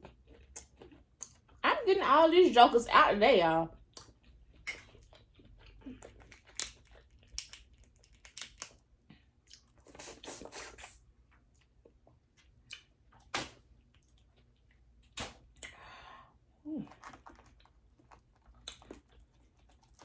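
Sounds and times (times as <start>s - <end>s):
wet chewing: 0.0s - 1.6s, 3.7s - 15.8s, 16.8s - 20.0s
shells cracking and tearing: 6.0s - 8.8s.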